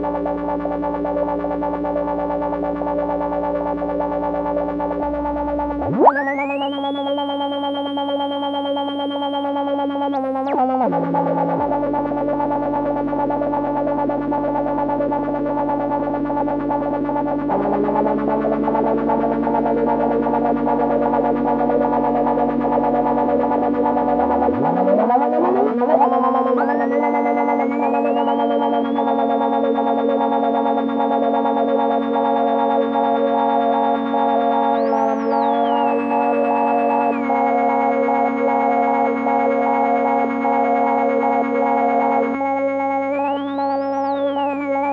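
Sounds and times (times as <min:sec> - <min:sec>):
buzzy synth drone: 0:00.0 - 0:44.9
high synth tone sweeping upward: 0:05.8 - 0:08.2, 0:17.3 - 0:32.5.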